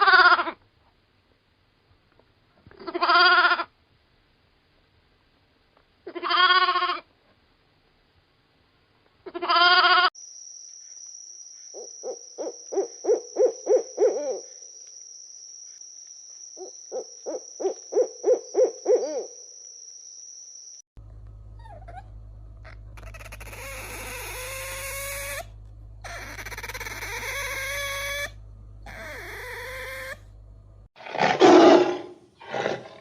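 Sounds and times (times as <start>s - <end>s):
animal bleating: 0.0s - 0.6s, 2.8s - 3.7s, 6.1s - 7.0s, 9.3s - 10.1s
animal quick repeated calls: 22.6s - 30.2s.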